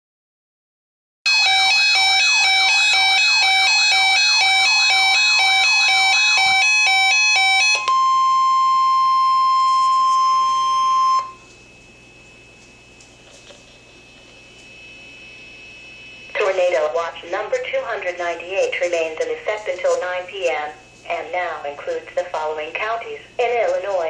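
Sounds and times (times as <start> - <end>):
electronic alarm beeping: 1.3 - 12.6, 13.7 - 16.8
faint radio hiss: 15.8 - 24.0.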